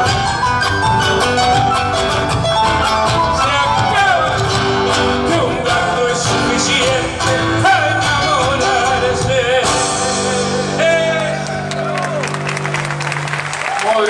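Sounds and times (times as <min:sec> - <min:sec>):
folk instrumental accompaniment: 0:00.0 - 0:14.0
person singing: 0:02.4 - 0:12.2.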